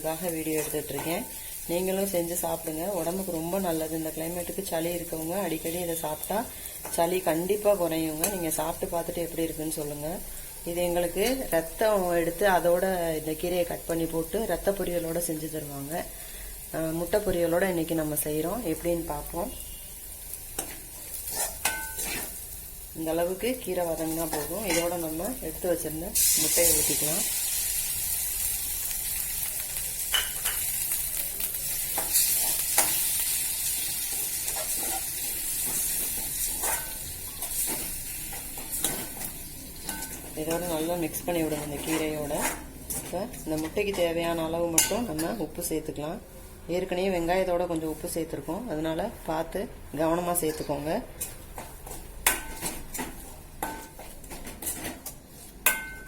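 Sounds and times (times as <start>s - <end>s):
eggs sizzling in frying pan: 0.0s - 56.0s
spatula scraping and tapping pan: 8.1s - 8.6s, 20.5s - 22.4s, 24.0s - 25.1s, 31.9s - 33.1s, 34.1s - 45.4s, 50.5s - 56.0s.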